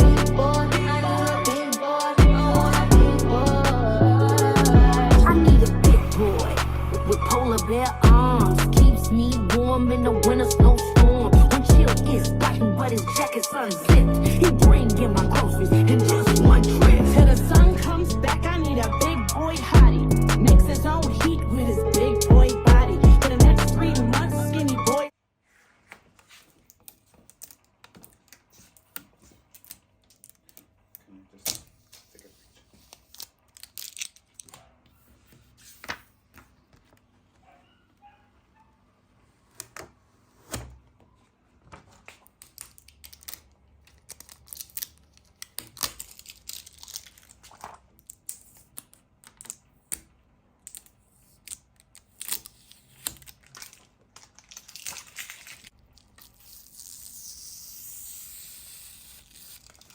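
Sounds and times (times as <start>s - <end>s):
crinkling rustles: 41.1s - 49.6s, 50.7s - 57.0s, 59.5s - 59.9s.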